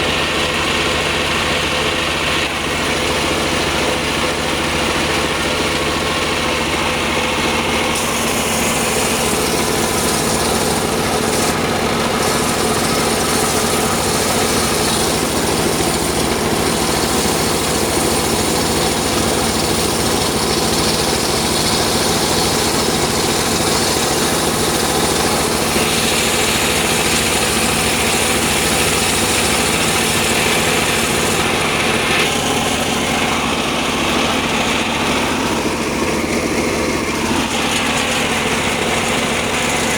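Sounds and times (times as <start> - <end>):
circular saw motor humming: 4.3 - 39.9
saw blade hissing in wood: 8.0 - 20.1, 21.6 - 32.4.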